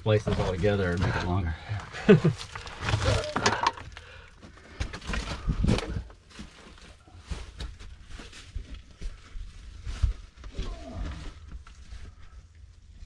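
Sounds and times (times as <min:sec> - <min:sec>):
scuffs scrapes and knocks: 0:00.1 - 0:01.5.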